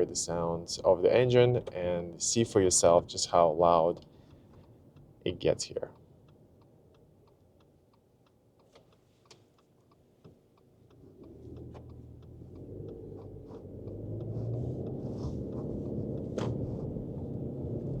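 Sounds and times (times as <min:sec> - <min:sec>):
steady ticking: 0:00.0 - 0:18.0
road noise: 0:10.6 - 0:18.0
car engine accelerating: 0:10.8 - 0:18.0.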